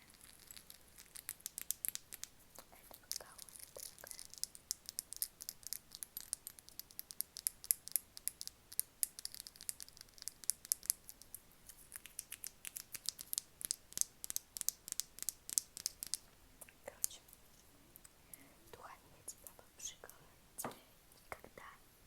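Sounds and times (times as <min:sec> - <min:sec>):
crisp rapid tapping and clicks: 0:00.1 - 0:16.2.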